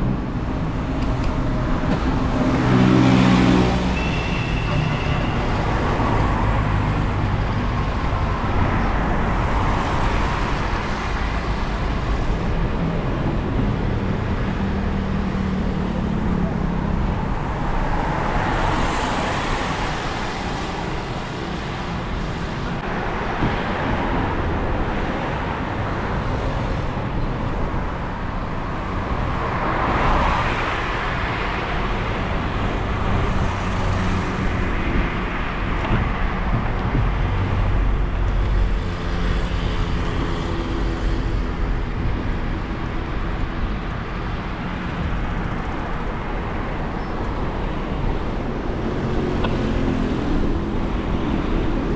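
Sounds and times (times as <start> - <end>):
cars passing: 0.0 - 51.9.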